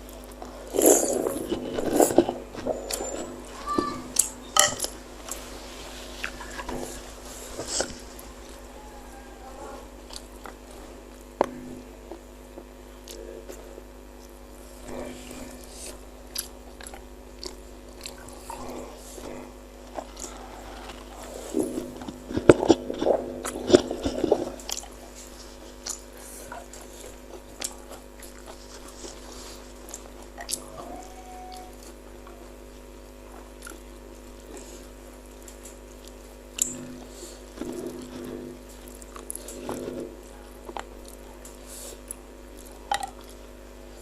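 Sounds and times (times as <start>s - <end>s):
person chewing: 0.0s - 43.5s
faint steady hum: 0.0s - 44.0s
wet chewing clicks: 16.3s - 30.7s, 35.3s - 40.0s.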